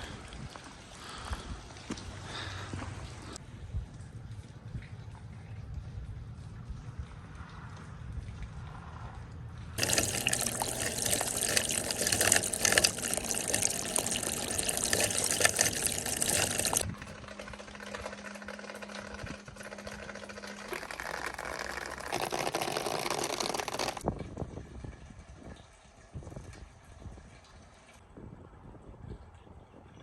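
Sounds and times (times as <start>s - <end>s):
water rushing and splashing: 9.8s - 16.9s.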